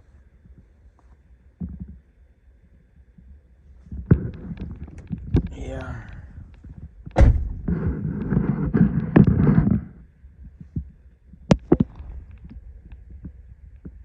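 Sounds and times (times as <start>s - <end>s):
vehicle rumbling on rough road: 3.8s - 14.0s
knocks: 7.1s - 8.0s.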